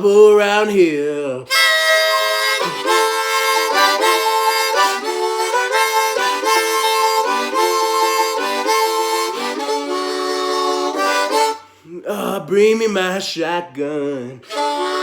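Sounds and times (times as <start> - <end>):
harmonica playing blues riff: 1.5 - 11.8, 14.4 - 15.0.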